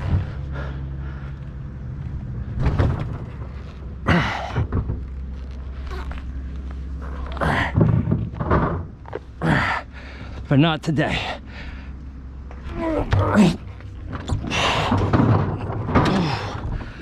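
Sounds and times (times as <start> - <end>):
low engine hum: 0.0 - 17.0
knocks and thumps of handling: 7.5 - 9.3, 14.0 - 17.0.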